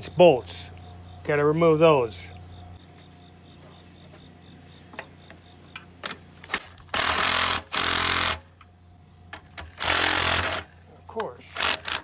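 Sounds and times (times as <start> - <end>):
power drill bursts: 6.5 - 8.5, 9.6 - 10.7, 11.5 - 12.0.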